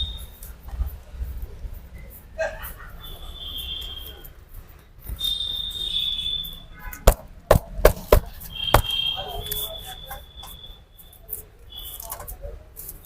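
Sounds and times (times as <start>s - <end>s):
hand strikes of percussive massage: 7.1s - 9.0s.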